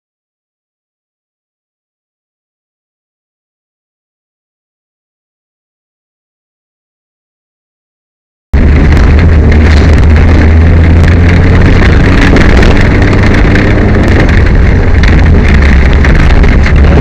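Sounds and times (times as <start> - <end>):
rally car engine droning: 8.6 - 17.0.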